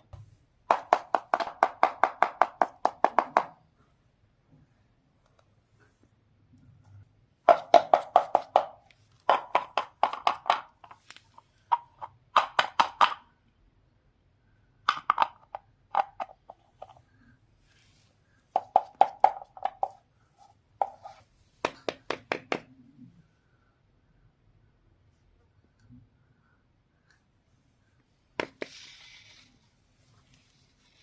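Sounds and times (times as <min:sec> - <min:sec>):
sharp taps of toy pieces: 0:07.5 - 0:13.3, 0:14.8 - 0:17.0, 0:18.5 - 0:20.0, 0:20.8 - 0:22.7.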